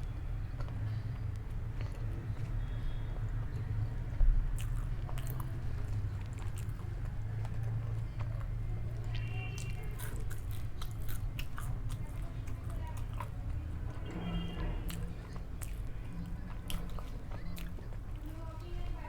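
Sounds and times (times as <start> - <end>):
chewing and biting food: 0.0 - 19.0
food crunching: 3.4 - 14.0, 14.6 - 19.0.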